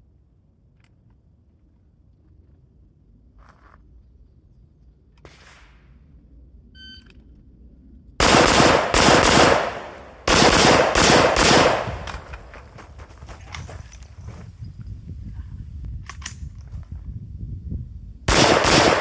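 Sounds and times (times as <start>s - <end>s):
rifle shots echoing: 8.2s - 12.6s, 18.3s - 19.0s.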